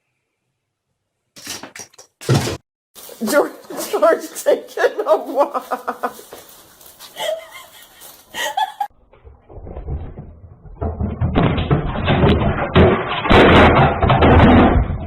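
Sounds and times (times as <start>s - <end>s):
loud clatter of knocks and bangs: 1.4s - 2.6s, 9.0s - 15.0s.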